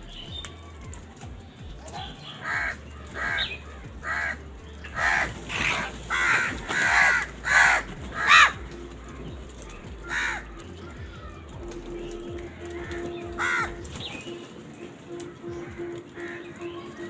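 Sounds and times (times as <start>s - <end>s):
crow cawing: 2.0s - 9.2s, 10.0s - 11.5s, 12.2s - 14.5s, 15.2s - 17.0s.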